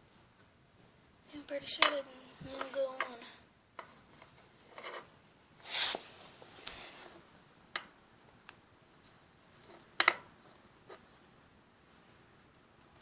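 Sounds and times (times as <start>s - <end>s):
metal scrape: 4.6s - 7.1s.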